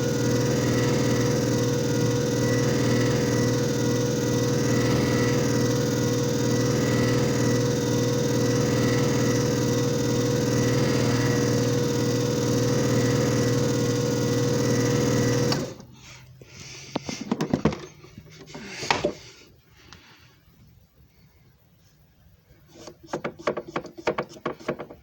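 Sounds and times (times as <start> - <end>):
machine motor hum and whir: 0.0 - 15.8.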